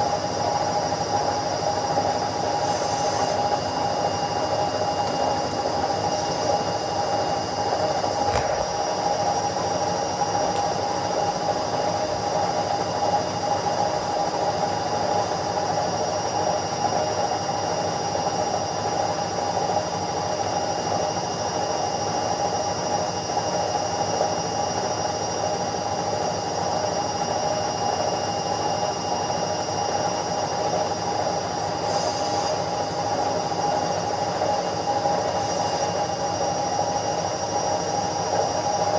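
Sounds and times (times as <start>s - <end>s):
washing machine spinning: 0.0s - 16.8s, 28.0s - 38.9s.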